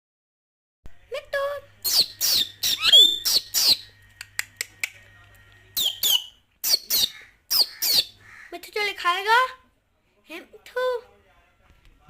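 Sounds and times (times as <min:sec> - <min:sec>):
parrot squawking and chirping: 0:01.8 - 0:04.0, 0:05.8 - 0:08.6.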